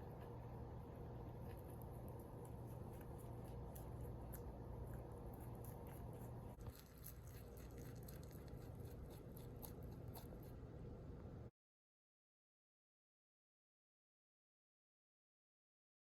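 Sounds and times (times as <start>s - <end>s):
steady low hum: 0.0s - 11.5s.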